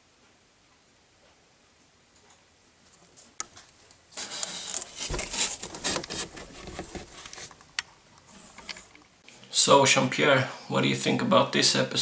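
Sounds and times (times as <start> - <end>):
scratching on cardboard: 4.1 - 7.6.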